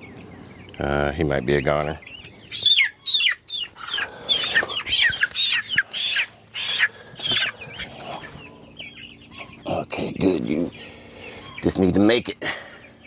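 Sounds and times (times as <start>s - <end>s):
chicks peeping: 0.0s - 13.0s.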